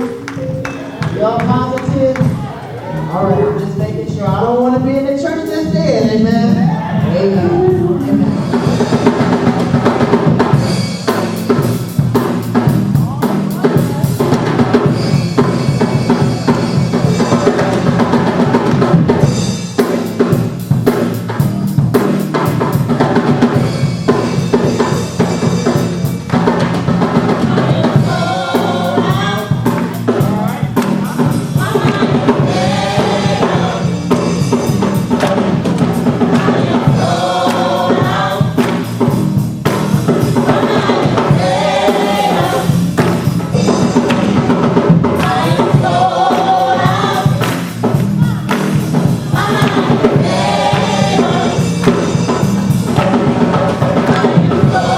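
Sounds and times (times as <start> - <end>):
drum kit and band playing: 0.0 - 54.9
choir singing: 24.6 - 30.4, 31.1 - 39.1, 40.0 - 54.9.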